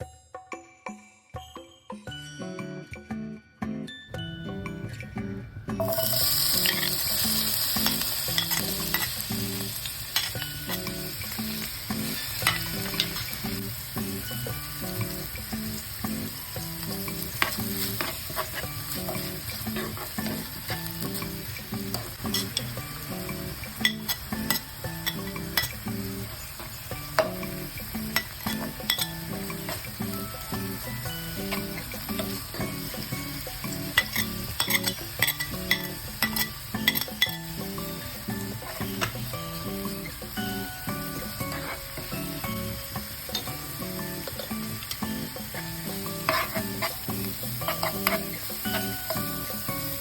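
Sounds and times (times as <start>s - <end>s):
food sizzling in hot oil: 5.8s - 50.0s
utensil clinking and scraping pan: 7.8s - 9.3s, 12.0s - 13.4s, 17.1s - 21.2s, 21.9s - 22.7s, 23.8s - 25.8s, 26.4s - 29.9s, 33.9s - 37.4s, 41.4s - 42.0s, 46.0s - 49.3s
stirring clicks and scrapes: 46.2s - 47.0s.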